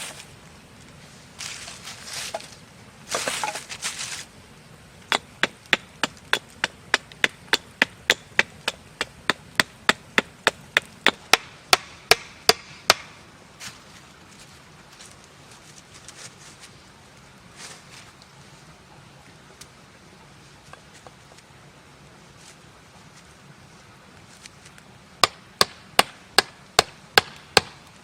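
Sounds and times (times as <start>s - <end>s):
scraping and rustling: 0.0s - 4.4s
wood chopping: 5.1s - 13.2s, 25.2s - 27.8s.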